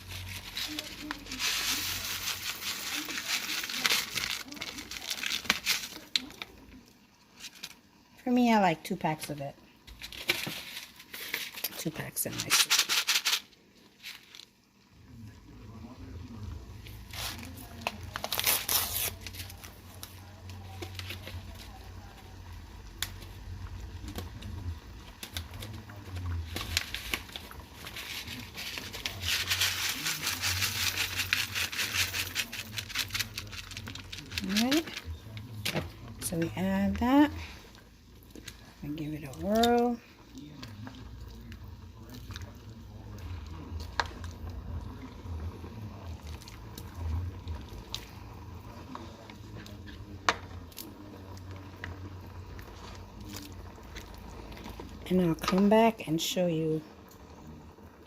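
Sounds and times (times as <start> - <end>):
packets crinkling and tearing: 0.0 - 6.6, 17.1 - 21.5, 25.1 - 36.1
spoon stirring soup in a pot: 34.9 - 55.7.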